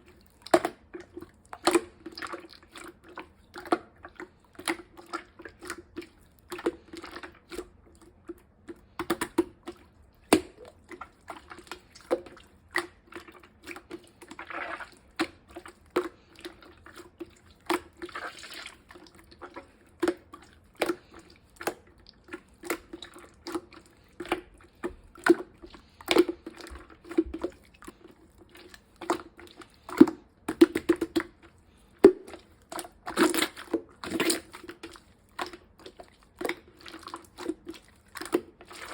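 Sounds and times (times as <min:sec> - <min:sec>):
slime squelching by hand: 0:00.0 - 0:38.9.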